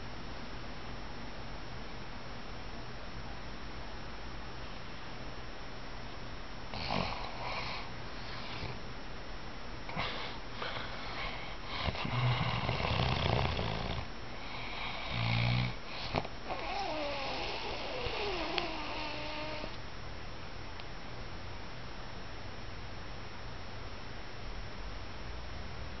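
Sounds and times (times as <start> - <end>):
man snoring: 6.7 - 7.9, 9.9 - 19.7.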